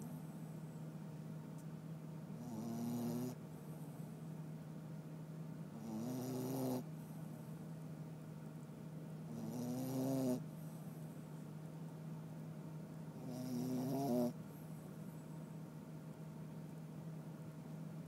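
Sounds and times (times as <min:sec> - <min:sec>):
pet snoring: 0:02.4 - 0:03.4, 0:05.7 - 0:06.9, 0:09.3 - 0:10.4, 0:13.2 - 0:14.4.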